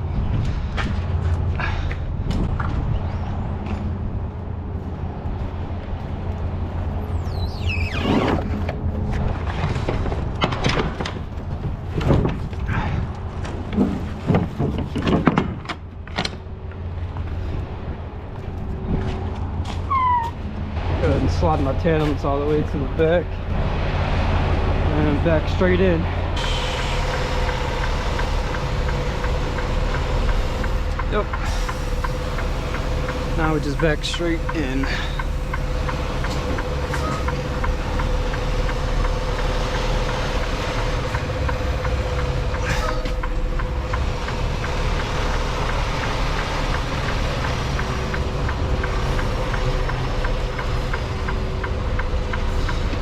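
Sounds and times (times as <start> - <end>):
diesel engine running: 0.0 - 53.0
knocks and rattles: 8.0 - 16.4
light regular ticking: 27.0 - 53.0.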